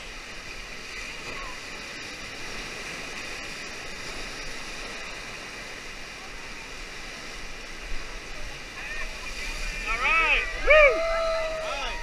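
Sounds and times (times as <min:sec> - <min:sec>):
river rapids rushing: 0:07.6 - 0:12.0.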